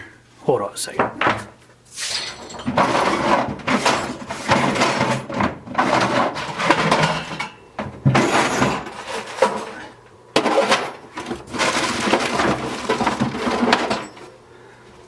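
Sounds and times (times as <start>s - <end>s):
tools clattering and scraping: 1.0s - 14.4s.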